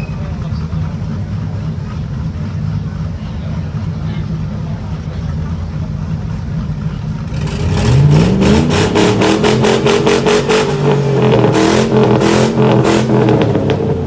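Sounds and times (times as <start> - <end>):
car engine revving high: 7.2 - 14.0.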